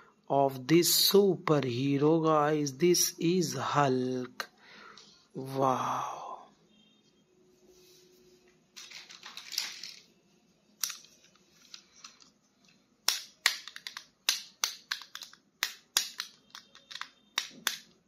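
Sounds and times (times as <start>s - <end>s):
plastic packaging crinkling: 8.8s - 10.1s
plastic clicks and snaps: 10.8s - 12.3s, 13.1s - 18.0s.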